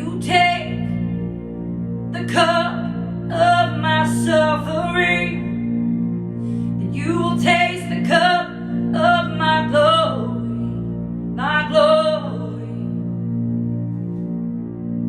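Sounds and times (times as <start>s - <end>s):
steady drone: 0.0s - 15.0s
person singing wordless chant: 6.9s - 13.0s.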